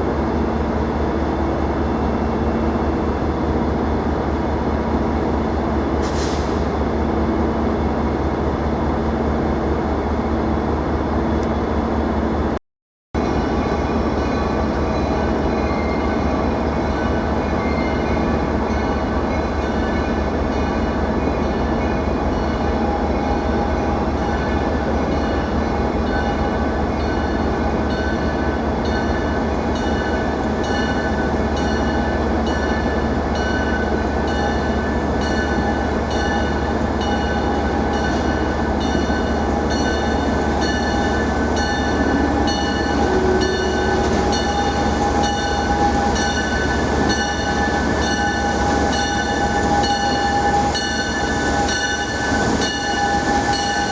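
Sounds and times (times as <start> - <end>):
train rumbling: 13.2 - 53.9.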